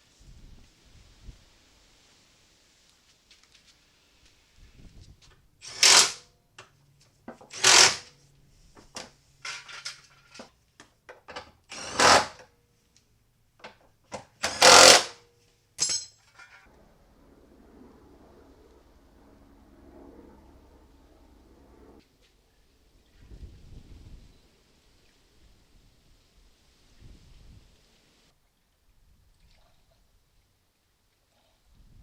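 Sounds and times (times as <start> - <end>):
handheld power tool bursts: 5.6 - 6.2, 7.4 - 8.1, 11.7 - 12.4, 14.4 - 15.2.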